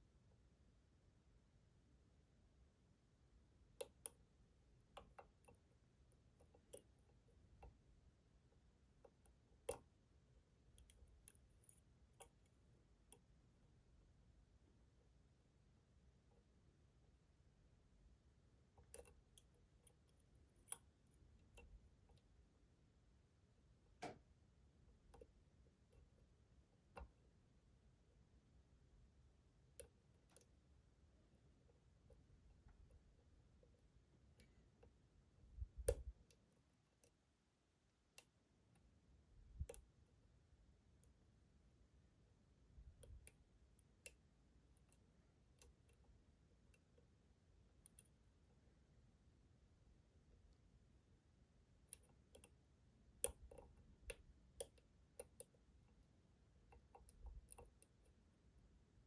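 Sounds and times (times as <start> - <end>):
lock pick clicking: 53.2 - 55.5.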